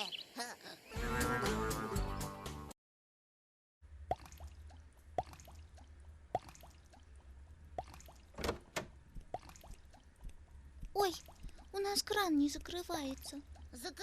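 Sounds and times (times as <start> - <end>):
water drops plinking: 4.1 - 7.1, 7.8 - 8.2, 9.3 - 10.1.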